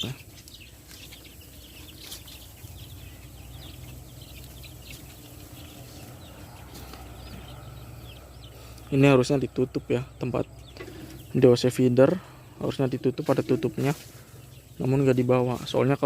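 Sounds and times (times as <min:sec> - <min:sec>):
chicks peeping: 0:00.0 - 0:16.0
chicks respiratory rattle: 0:00.0 - 0:16.0.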